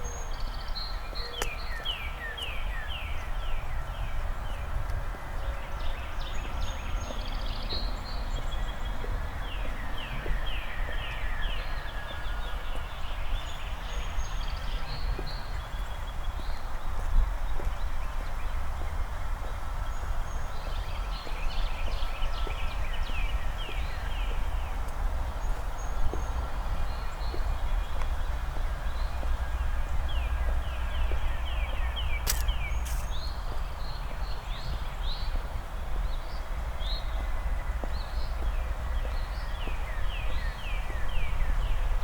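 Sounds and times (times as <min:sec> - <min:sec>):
songbirds singing: 0:00.0 - 0:42.0
walking footsteps: 0:20.6 - 0:34.8
sharp click: 0:32.2 - 0:33.2.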